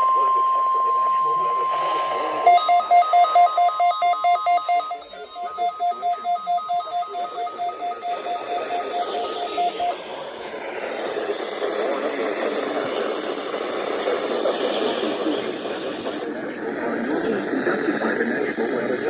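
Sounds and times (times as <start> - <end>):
radio static hiss: 0.0 - 3.1, 6.6 - 19.0
two-tone alert beeps: 2.4 - 10.0.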